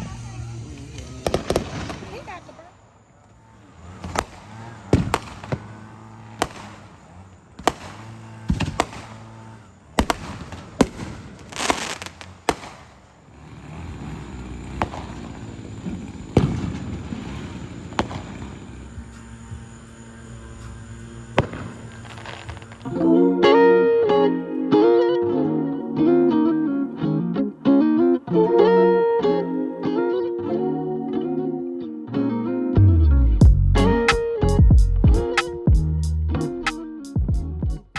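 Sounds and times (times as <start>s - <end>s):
fireworks bangs: 0.0s - 2.9s, 3.7s - 23.2s
fireworks crackling: 0.0s - 23.7s.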